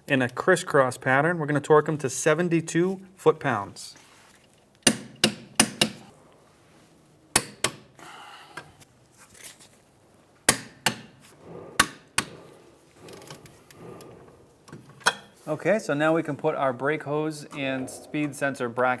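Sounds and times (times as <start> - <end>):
faint handling noise: 3.8 - 4.8, 8.6 - 10.4.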